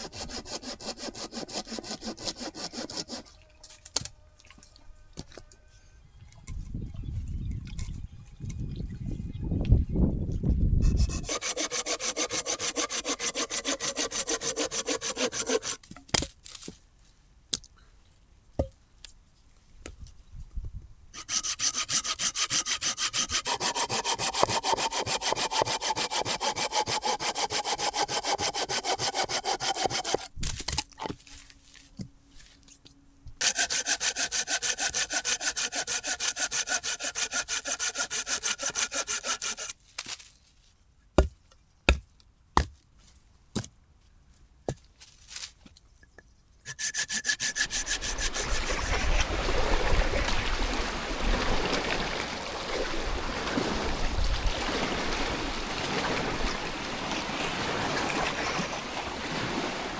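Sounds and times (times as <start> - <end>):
hand saw cutting wood: 0.0 - 4.1, 10.8 - 15.9, 21.2 - 30.4, 33.4 - 39.8, 46.7 - 50.4, 57.1 - 58.9.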